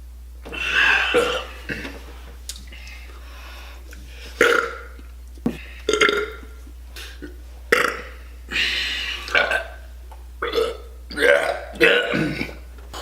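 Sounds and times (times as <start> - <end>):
man burping: 0.5 - 2.0, 4.4 - 13.0.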